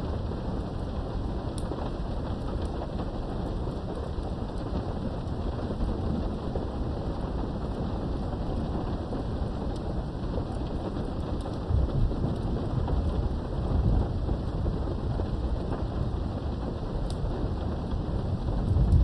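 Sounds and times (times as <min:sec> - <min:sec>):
rain heard through window: 0:00.0 - 0:19.0
low rolling thunder: 0:10.4 - 0:19.0.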